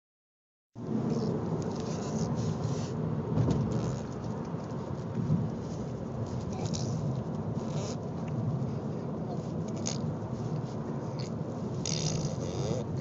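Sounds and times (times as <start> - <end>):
baby blowing raspberries: 9.7 - 10.0, 11.1 - 13.0.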